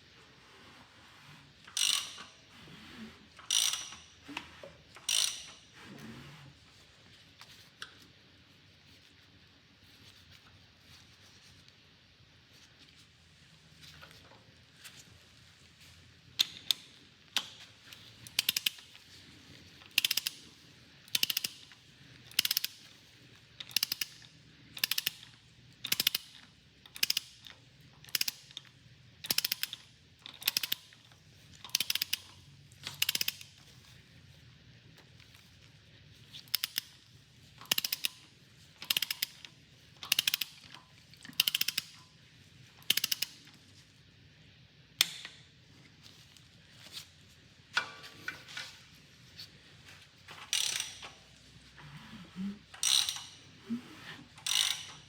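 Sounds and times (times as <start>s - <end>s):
socket ratchet clicking: 1.8s - 2.3s, 3.4s - 4.1s, 5.0s - 5.6s, 18.2s - 19.0s, 19.9s - 20.4s, 21.1s - 21.7s, 22.3s - 22.8s, 23.6s - 28.6s, 29.2s - 31.0s, 31.6s - 33.5s, 36.3s - 37.0s, 37.6s - 42.0s, 42.8s - 43.5s, 50.5s - 51.0s, 52.8s - 53.4s, 54.4s - 55.0s.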